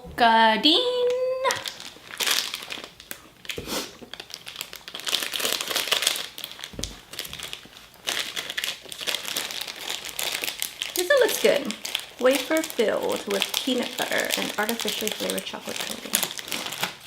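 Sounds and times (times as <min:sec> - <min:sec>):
wrapper crinkling: 0:00.8 - 0:17.0
soft thuds: 0:06.7 - 0:07.5.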